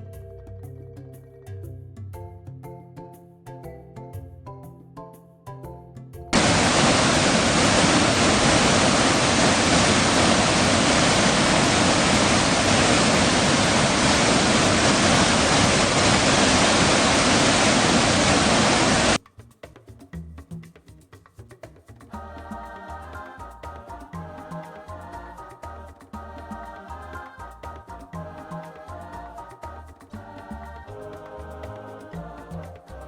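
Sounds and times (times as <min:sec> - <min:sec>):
loud steady rushing noise: 0:06.4 - 0:19.2
background music: 0:21.9 - 0:33.0.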